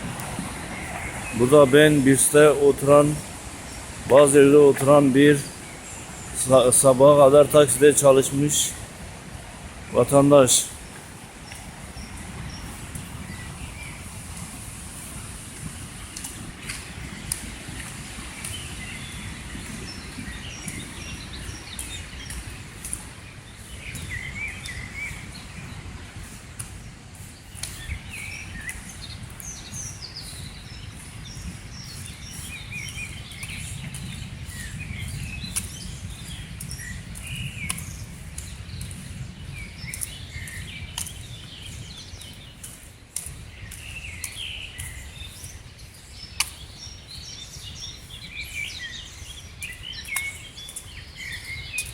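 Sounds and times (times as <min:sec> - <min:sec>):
river rushing: 0:00.0 - 0:12.2
songbirds chirping and singing: 0:00.0 - 0:14.2, 0:16.9 - 0:25.8, 0:26.8 - 0:51.9.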